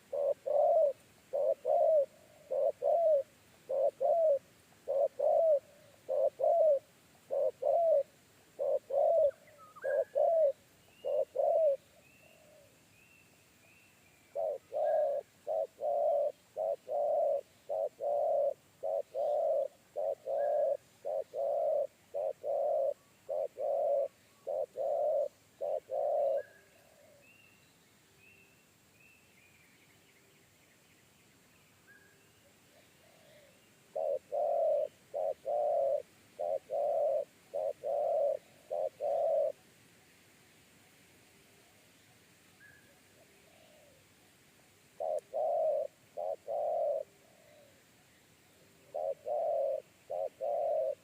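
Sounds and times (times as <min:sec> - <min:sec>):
dove cooing: 0:00.0 - 0:12.8, 0:14.3 - 0:27.3, 0:32.7 - 0:39.6, 0:42.8 - 0:44.1, 0:44.9 - 0:47.9, 0:48.5 - 0:51.0.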